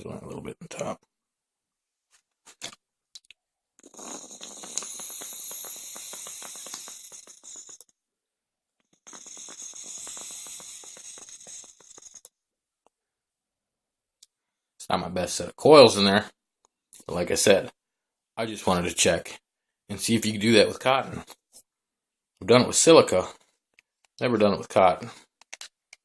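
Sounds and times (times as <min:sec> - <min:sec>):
vape puff with crackling and gurgling: 0:03.8 - 0:08.0, 0:08.8 - 0:12.3.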